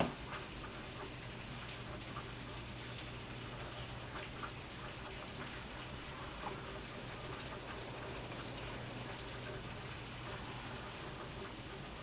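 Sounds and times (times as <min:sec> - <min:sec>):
drips and taps: 0:00.0 - 0:08.5
steady rain: 0:00.0 - 0:12.0.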